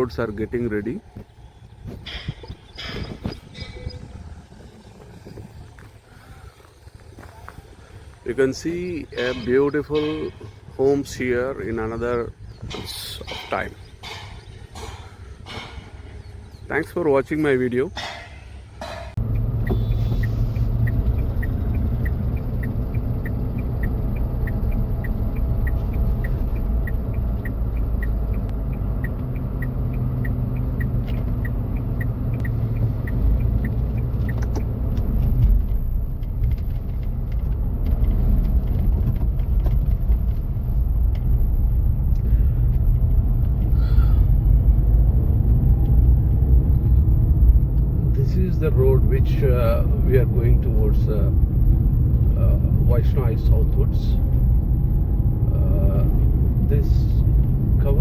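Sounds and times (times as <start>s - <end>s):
moving vehicle rumble: 0.0s - 58.0s
light regular ticking: 19.1s - 48.2s.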